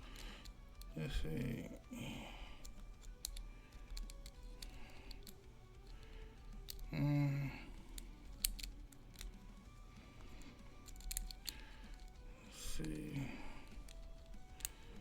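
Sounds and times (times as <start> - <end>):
lock pick clicking: 0.0 - 1.0, 2.4 - 7.0, 7.7 - 15.0
person humming: 6.8 - 7.9.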